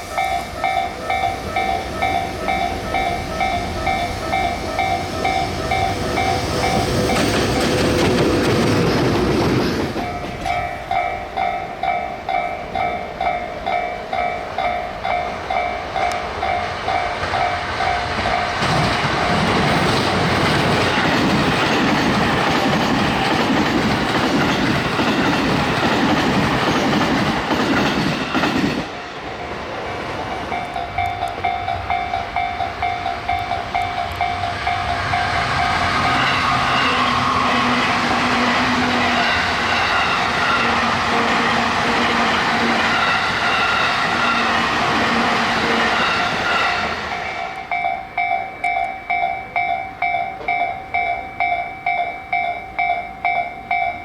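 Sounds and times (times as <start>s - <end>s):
train wheels clacking on rails: 0.0s - 54.0s
level crossing bell ringing: 10.0s - 18.6s, 47.4s - 54.0s.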